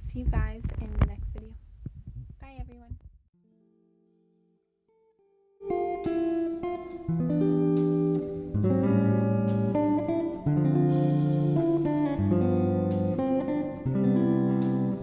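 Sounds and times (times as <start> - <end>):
relaxed guitar music: 3.4 - 15.0.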